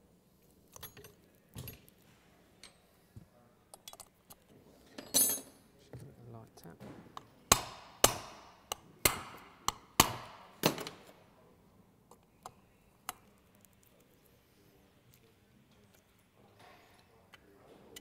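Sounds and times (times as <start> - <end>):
hammer tapping on metal: 7.2 - 10.8.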